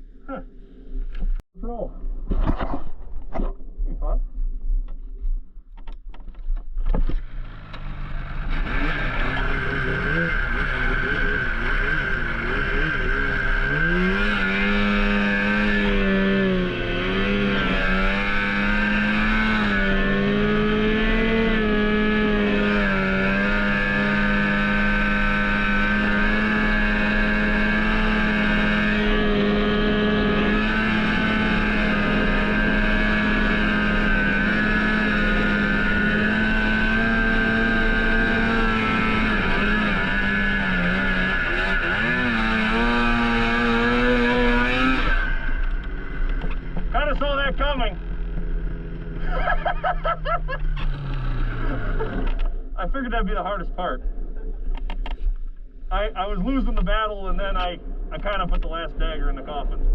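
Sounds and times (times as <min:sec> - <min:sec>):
snowmobile engine at high revs: 0:07.0 - 0:53.6.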